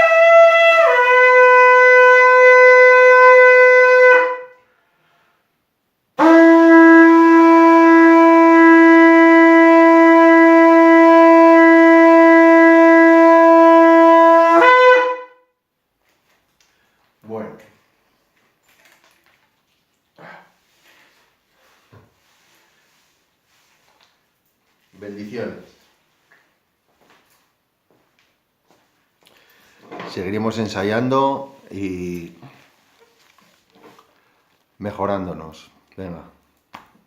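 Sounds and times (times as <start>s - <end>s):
shofar blasts: 0.0s - 4.7s, 6.2s - 15.6s.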